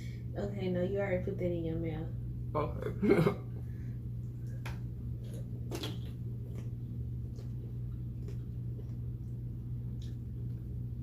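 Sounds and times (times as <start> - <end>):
steady low hum: 0.0 - 11.0
person chewing food: 4.2 - 11.0
mouth clicks and smacks: 4.4 - 9.3.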